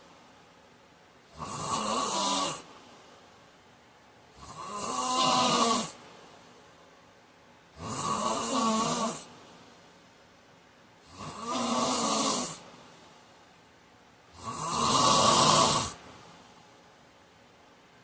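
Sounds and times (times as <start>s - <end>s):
man snoring: 1.3s - 2.7s, 4.4s - 6.0s, 7.8s - 9.3s, 11.0s - 12.7s, 14.4s - 16.0s.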